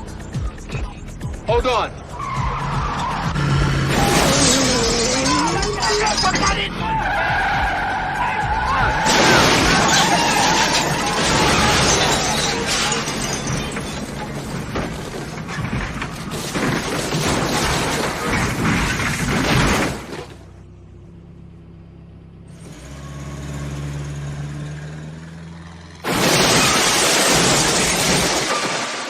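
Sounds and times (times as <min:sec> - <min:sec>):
car crashing: 0:02.2 - 0:20.5, 0:26.0 - 0:29.0
glass shattering: 0:03.9 - 0:06.7, 0:08.9 - 0:20.2, 0:26.0 - 0:29.0.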